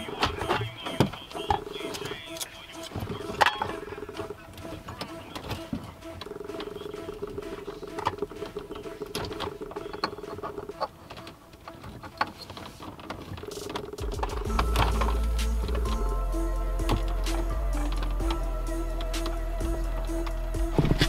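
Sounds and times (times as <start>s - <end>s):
steady hum: 13.4s - 21.0s.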